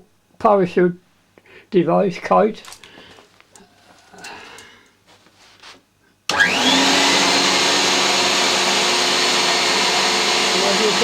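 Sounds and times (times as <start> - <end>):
faint handling sounds: 2.6 - 6.1
vacuum cleaner running: 6.3 - 11.0.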